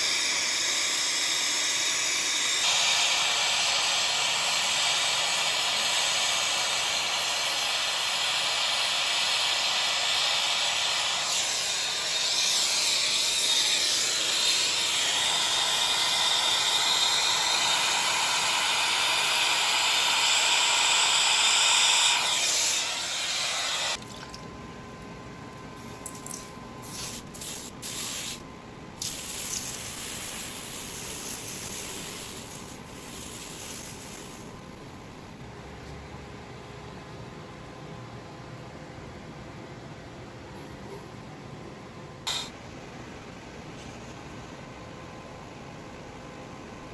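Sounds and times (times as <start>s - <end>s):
gas torch flame hissing: 26.3s - 28.4s, 29.0s - 34.7s.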